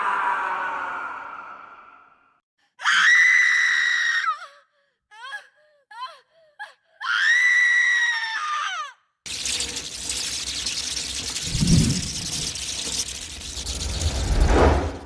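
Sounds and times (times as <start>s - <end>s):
rushing noise: 11.3s - 15.0s.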